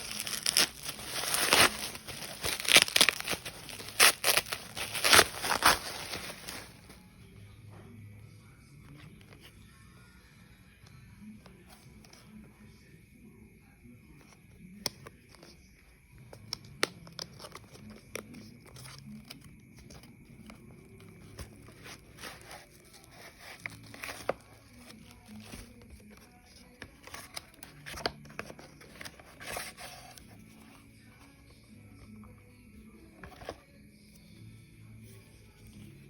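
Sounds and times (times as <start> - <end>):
plastic and paper tearing: 0.0 - 6.8.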